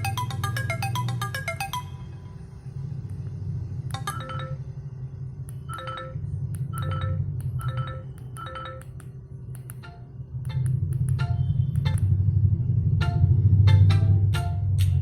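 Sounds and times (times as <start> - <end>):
bright chime-like melody: 0.0 - 2.3.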